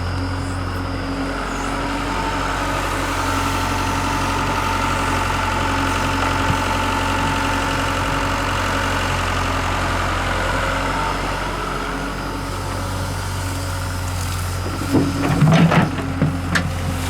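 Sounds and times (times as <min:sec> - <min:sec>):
diesel engine running: 0:00.0 - 0:17.0
sharp knocks and clatter: 0:14.6 - 0:16.8.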